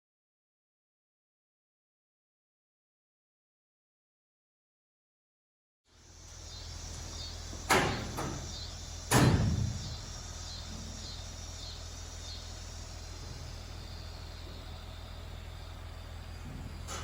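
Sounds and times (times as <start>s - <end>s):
crickets chirping: 5.9s - 17.0s
steady low hum: 5.9s - 17.0s
sharp bangs: 7.5s - 10.8s.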